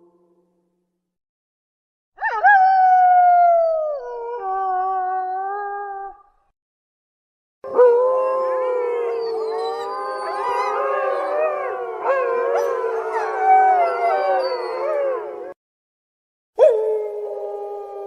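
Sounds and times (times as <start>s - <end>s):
wolves howling: 7.7s - 15.6s, 16.6s - 18.0s.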